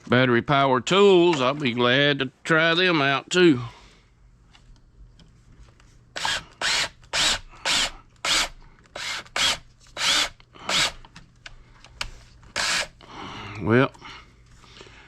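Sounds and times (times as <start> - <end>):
power wire stripper whining: 6.2 - 11.1, 12.5 - 13.1.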